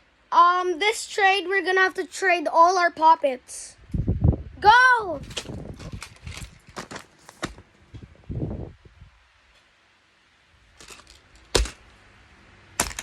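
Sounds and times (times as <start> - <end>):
light clicks and rustles: 5.2 - 8.1.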